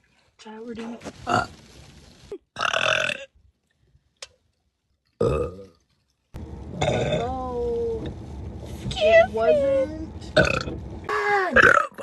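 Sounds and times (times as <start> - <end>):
person burping: 5.2 - 5.7, 11.6 - 12.0.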